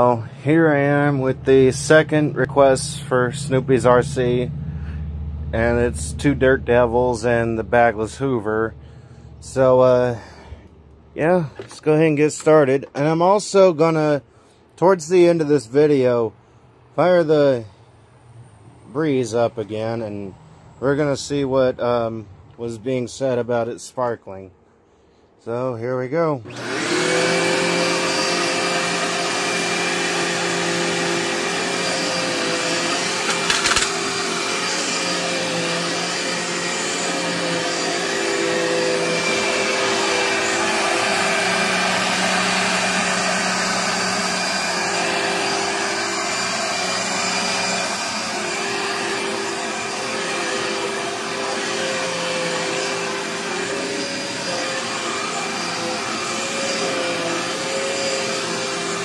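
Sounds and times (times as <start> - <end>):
vacuum cleaner motor whine: 26.4 - 59.0.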